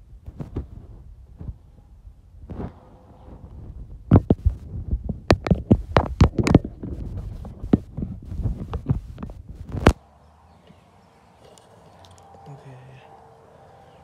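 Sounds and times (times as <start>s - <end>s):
heavy thumps and knocks: 3.6s - 10.0s.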